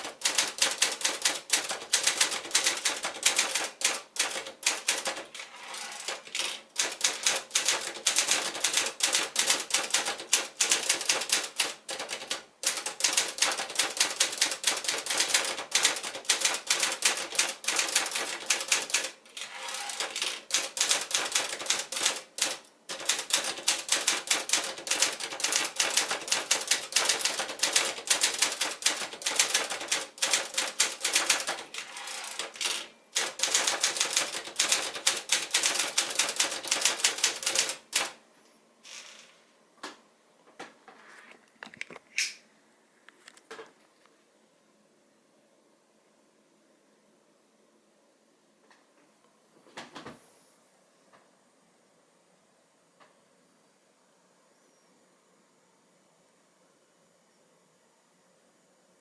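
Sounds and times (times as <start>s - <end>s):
typewriter keystrokes: 0.0s - 38.2s.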